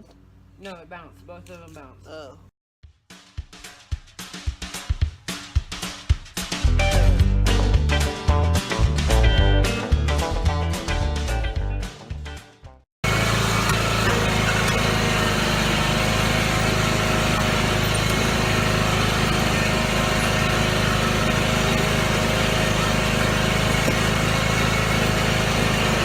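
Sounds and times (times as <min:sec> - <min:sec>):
music: 0:02.8 - 0:12.8
riding lawn mower engine running: 0:13.0 - 0:26.0.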